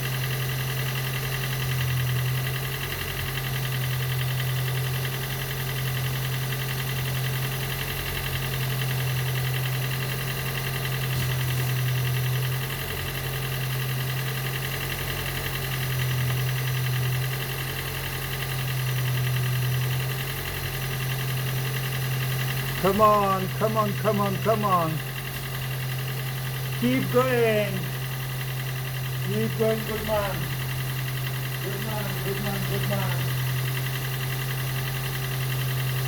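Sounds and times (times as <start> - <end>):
car engine running: 0.0 - 36.0.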